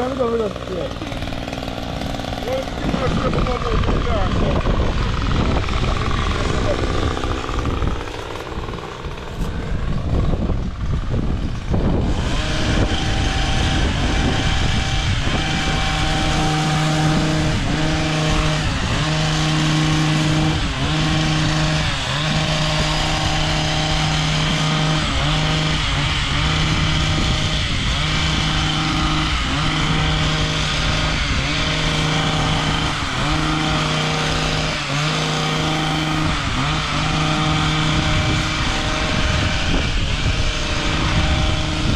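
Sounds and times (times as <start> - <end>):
engine humming: 0.0 - 41.9.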